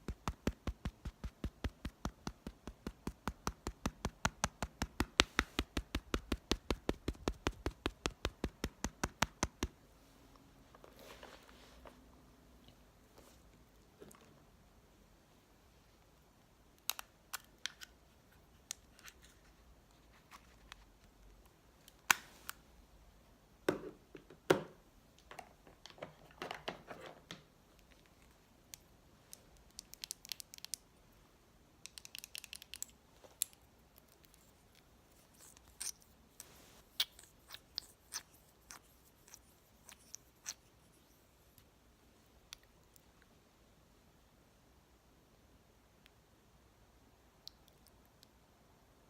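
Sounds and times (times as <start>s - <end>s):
soft rustle: 9.9s - 14.4s, 17.8s - 22.7s, 32.8s - 41.7s.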